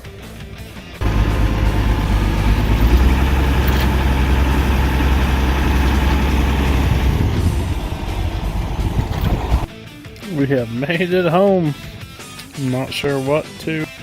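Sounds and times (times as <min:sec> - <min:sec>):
vehicle engine droning: 0:01.0 - 0:09.7.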